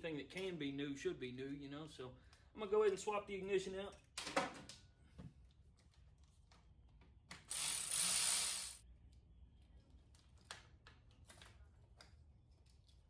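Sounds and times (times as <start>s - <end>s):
ratchet wrench spinning: 7.5s - 8.8s.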